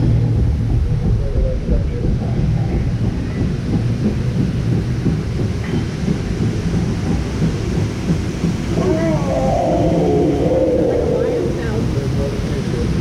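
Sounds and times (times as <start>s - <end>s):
rushing water: 0.0s - 13.0s.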